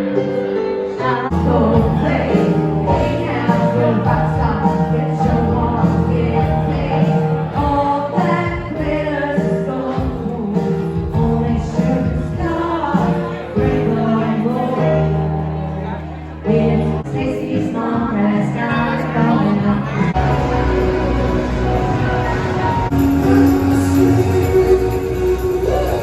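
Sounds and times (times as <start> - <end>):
person singing: 0.0 - 26.0
sustained bass notes: 1.3 - 13.0, 13.6 - 26.0.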